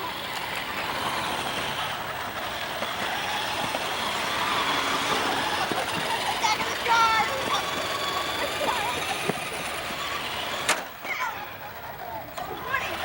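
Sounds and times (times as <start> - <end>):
toy truck electric motors whirring: 0.0 - 13.0.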